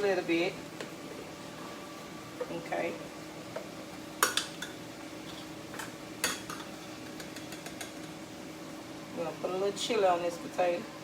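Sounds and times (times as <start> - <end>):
faint steady hum: 0.0 - 11.0.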